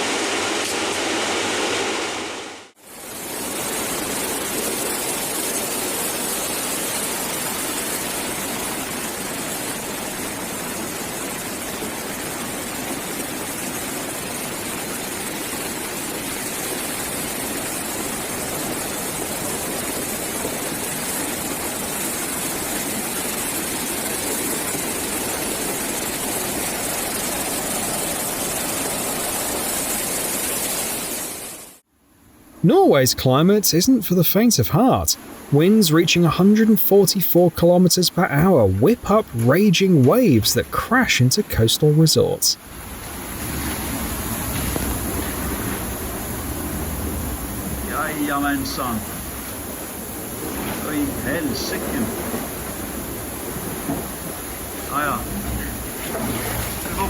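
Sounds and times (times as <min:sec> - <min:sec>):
floodwater rushing: 0:32.7 - 0:57.0.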